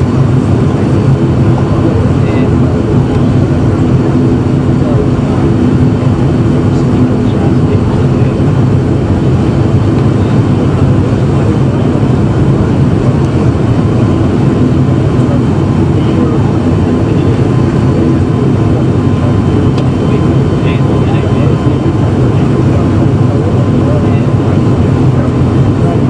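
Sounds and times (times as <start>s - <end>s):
jet engines roaring: 0.0s - 26.0s.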